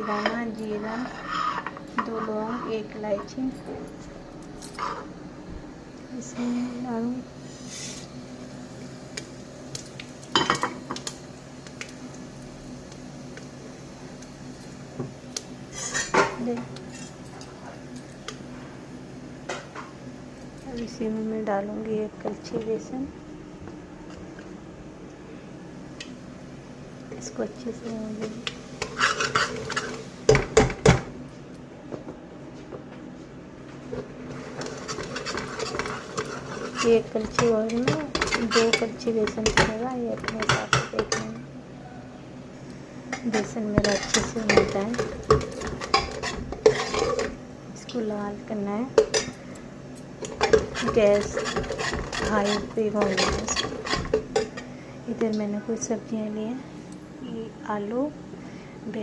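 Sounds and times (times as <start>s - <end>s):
metal ladle scraping flour in pan: 0.0s - 2.7s, 50.4s - 54.2s
steady low hum: 0.0s - 59.0s
metal utensils clinking on pan: 34.6s - 41.4s, 43.1s - 47.4s, 50.2s - 54.6s.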